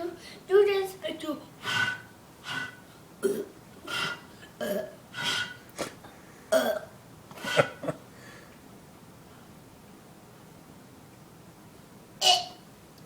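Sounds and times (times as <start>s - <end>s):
boy burping: 3.2s - 5.0s, 6.5s - 7.9s, 12.2s - 12.6s.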